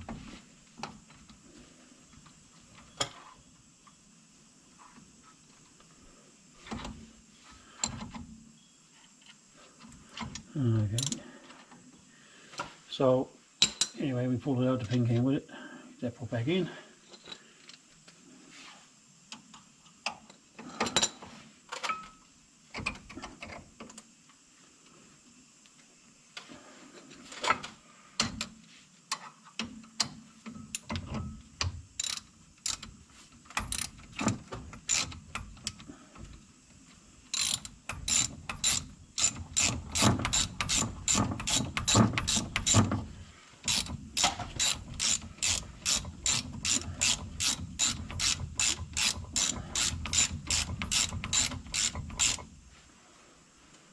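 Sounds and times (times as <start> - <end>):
tools and parts clicking and knocking: 13.6 - 14.0, 27.4 - 36.4, 37.3 - 52.6
ratchet wrench ratcheting: 32.0 - 32.9, 33.6 - 34.0, 34.8 - 35.5, 37.3 - 43.0, 43.6 - 52.5.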